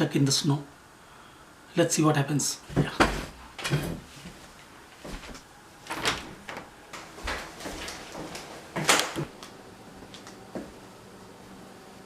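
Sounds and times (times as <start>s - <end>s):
short knocks and clunks: 2.7s - 4.1s.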